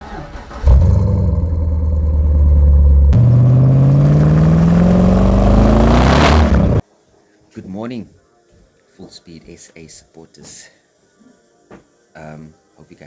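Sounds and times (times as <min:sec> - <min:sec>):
car engine revving through loud exhaust: 0:00.6 - 0:06.8.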